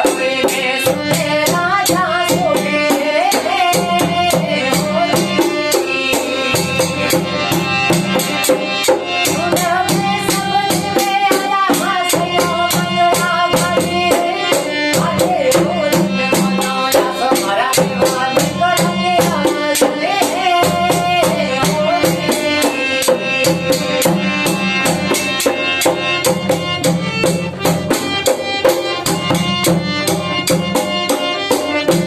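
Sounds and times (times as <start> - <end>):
dholak drum beat: 0.0 - 32.0.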